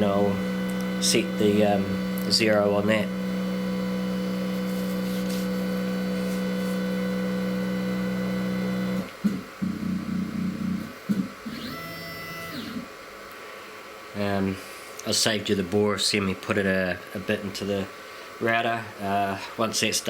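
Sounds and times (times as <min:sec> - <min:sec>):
stepper motors humming: 0:00.0 - 0:13.0
motor whine: 0:00.0 - 0:13.1.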